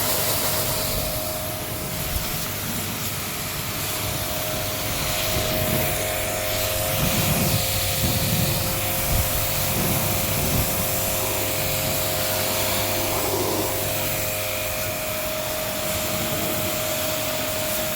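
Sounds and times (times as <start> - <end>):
loud hiss of air: 0.0 - 17.9
motor whining steadily: 0.7 - 17.9.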